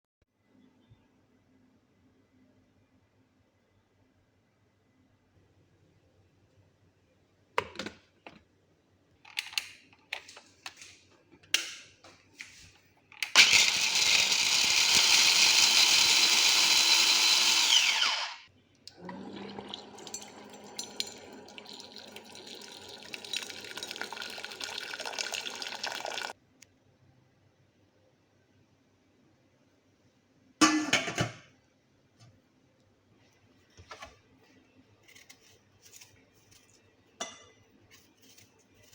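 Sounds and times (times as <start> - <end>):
small electric motor whining: 13.4 - 18.5.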